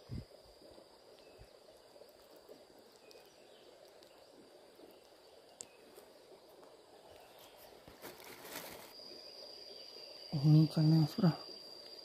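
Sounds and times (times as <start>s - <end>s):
thin steady high tone: 8.6s - 12.0s.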